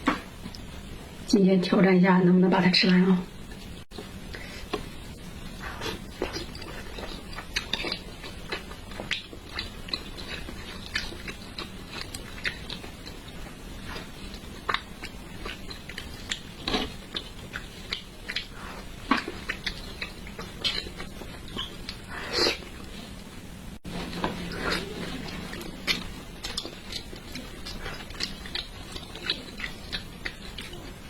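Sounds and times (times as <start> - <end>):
person chewing with mouth clicks: 5.6 - 23.0, 23.9 - 31.0.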